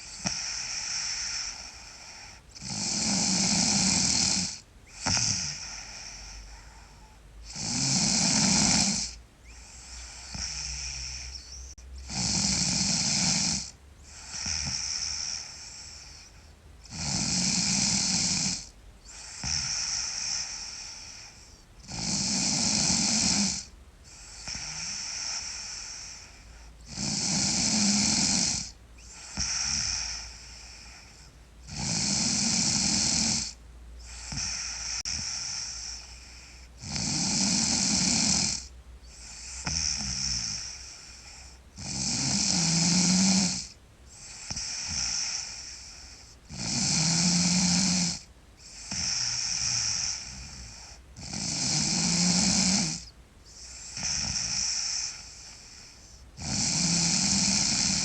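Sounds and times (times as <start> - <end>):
girl snoring loudly: 0.0 - 6.5, 7.5 - 31.0, 31.7 - 58.0.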